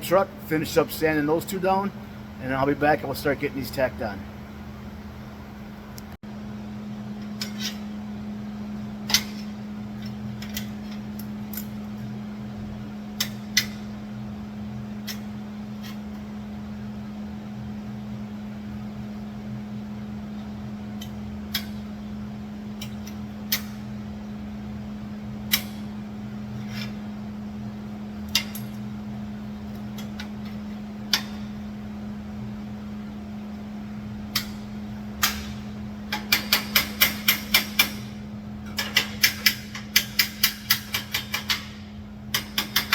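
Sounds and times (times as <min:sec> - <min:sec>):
steady low hum: 0:00.0 - 0:42.9.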